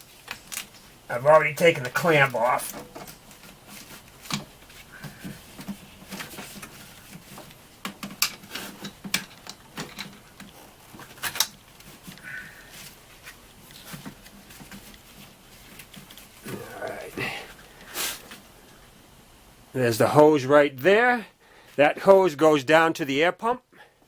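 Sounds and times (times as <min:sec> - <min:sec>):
hands working rubber hose clicks: 0:01.8 - 0:12.3.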